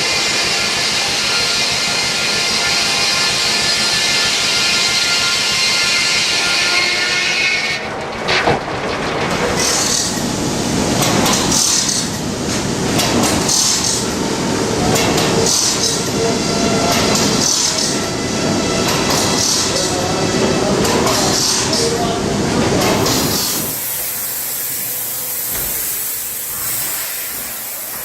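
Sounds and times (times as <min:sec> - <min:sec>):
sawmill machinery rumble: 0:00.0 - 0:28.0
steam hiss: 0:09.6 - 0:10.2, 0:22.8 - 0:28.0.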